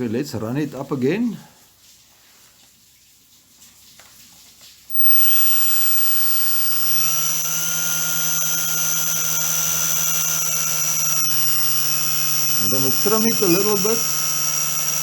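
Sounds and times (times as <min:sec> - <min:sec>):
drone propellers whining: 0:04.9 - 0:15.0.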